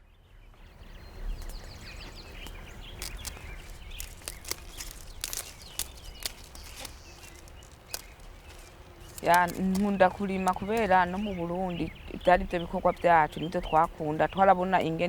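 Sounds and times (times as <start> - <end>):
small birds chirping: 0.0 - 15.0
sharp clicks: 2.4 - 11.2.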